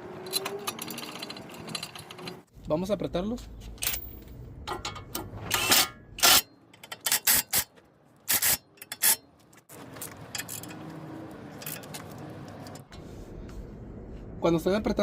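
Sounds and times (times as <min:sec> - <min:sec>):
ratchet wrench clicking: 0:05.6 - 0:07.7, 0:08.3 - 0:09.2.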